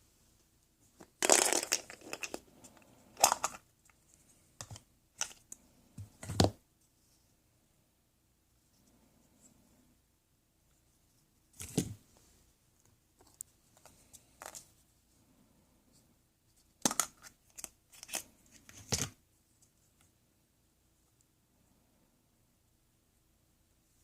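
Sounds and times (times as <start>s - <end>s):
rustling scraping handling noises: 0.9s - 6.4s.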